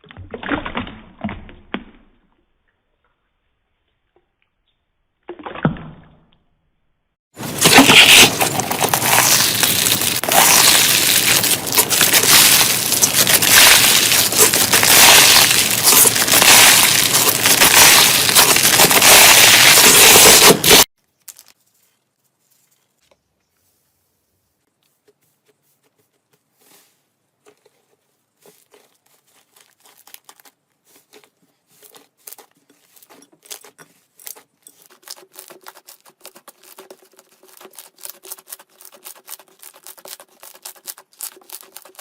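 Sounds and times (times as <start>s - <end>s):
crunchy slime crackling: 7.4s - 21.5s, 28.5s - 42.0s.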